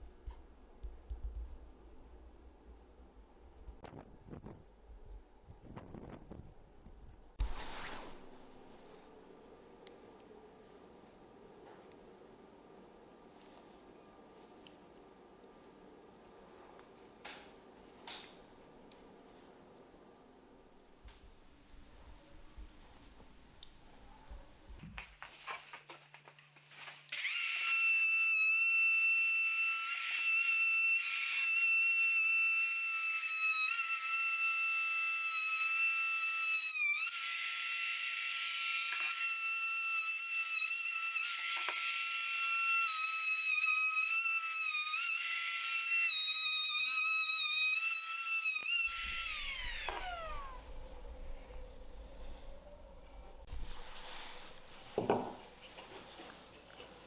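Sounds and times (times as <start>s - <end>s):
power tool motor whining: 27.1s - 52.6s.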